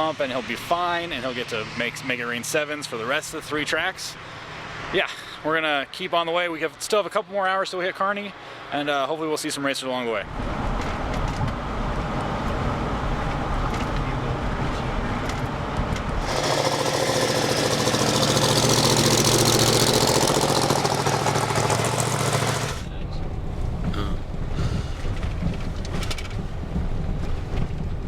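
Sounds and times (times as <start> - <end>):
road noise: 0.0 - 28.0
wind noise: 10.2 - 16.4, 22.8 - 28.0
loud rattling engine exhaust: 10.2 - 28.0.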